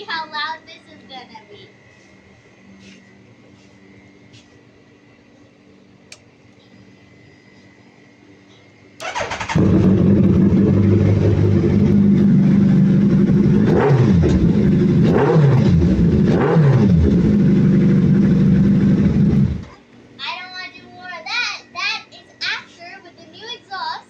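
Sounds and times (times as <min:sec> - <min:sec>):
motorcycle starter cranking: 0:09.0 - 0:11.9
motorcycle engine idling: 0:09.0 - 0:15.1, 0:16.9 - 0:19.6
motorcycle throttle blips: 0:09.0 - 0:19.8.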